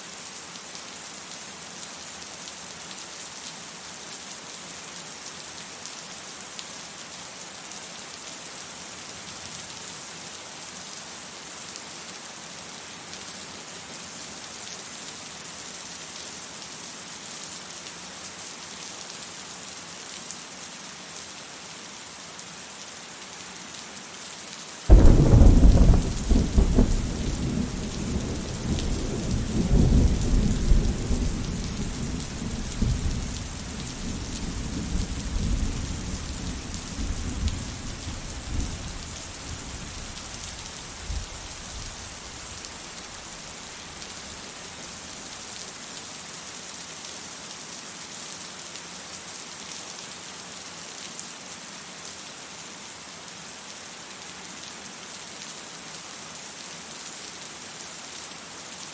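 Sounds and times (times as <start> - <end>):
loud thunderclap: 24.9 - 33.6
deep rolling thunder rumble: 24.9 - 39.8
rain hissing: 24.9 - 45.6.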